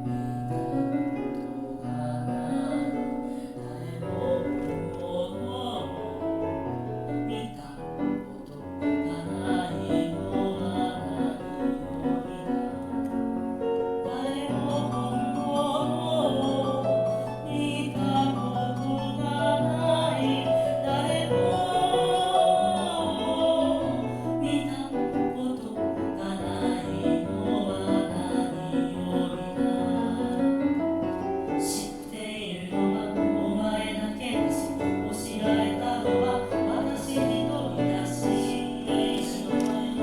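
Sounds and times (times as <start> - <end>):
layered voices singing in harmony: 0.0 - 40.0.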